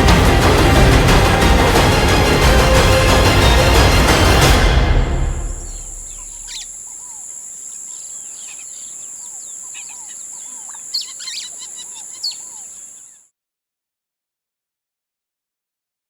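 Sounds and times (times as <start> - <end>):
music: 0.0 - 6.4
birds chirping: 5.2 - 13.2.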